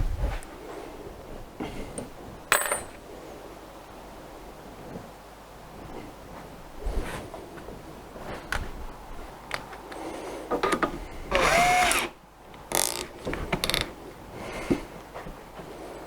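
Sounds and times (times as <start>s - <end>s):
clicks and knocks of hand work: 9.5s - 14.0s
small electric motor whirring: 11.3s - 12.2s.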